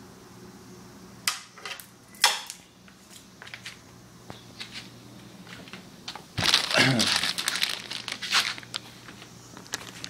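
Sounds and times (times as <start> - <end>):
knocks and rustles of packaging: 6.4 - 10.0.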